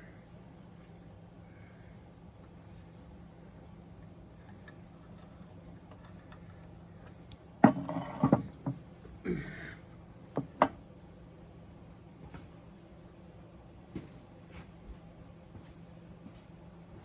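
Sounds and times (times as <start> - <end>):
steady low hum: 0.0 - 17.0
metal tools clinking on workbench: 7.6 - 8.6.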